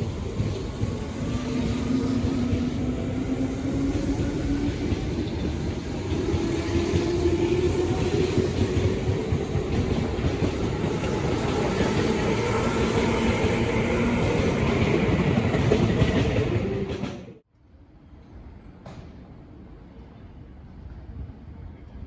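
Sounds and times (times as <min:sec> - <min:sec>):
train wheels rumbling on rail: 0:00.0 - 0:17.4.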